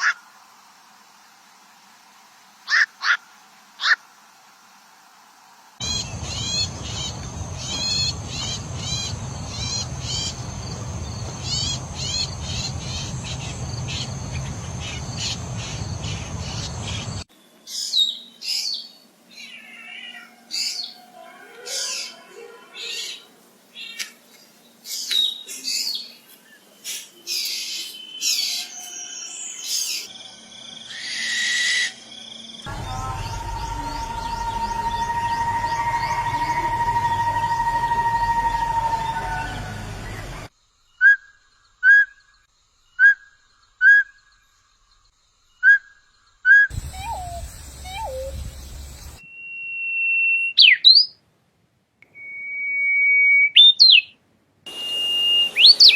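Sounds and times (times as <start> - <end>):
steady low rumble: 5.8 - 17.2, 32.7 - 40.5, 46.7 - 49.2
birds chirping: 5.8 - 31.3, 31.9 - 40.5, 44.3 - 49.3, 53.5 - 55.9
bird calls and whistles: 45.6 - 51.2, 52.2 - 55.9.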